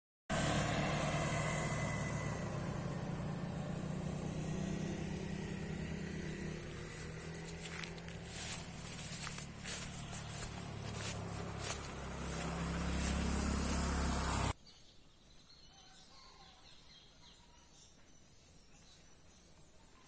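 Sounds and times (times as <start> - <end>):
sawmill engine running: 0.3 - 14.5.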